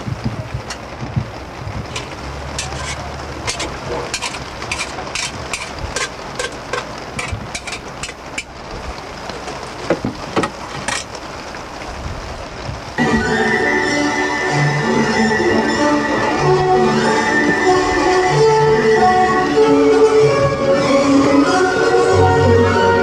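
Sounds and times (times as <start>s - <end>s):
raindrops ticking on a vehicle: 0.0s - 13.5s
steady rushing noise: 0.0s - 23.0s.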